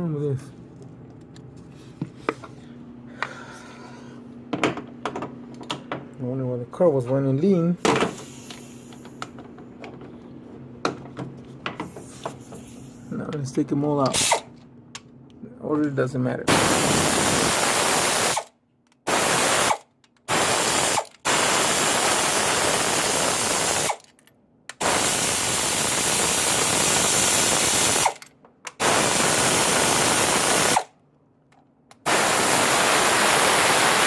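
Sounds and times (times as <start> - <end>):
power tool spinning out bolts: 14.1 - 14.5, 16.5 - 18.5, 19.1 - 24.2, 24.8 - 30.9.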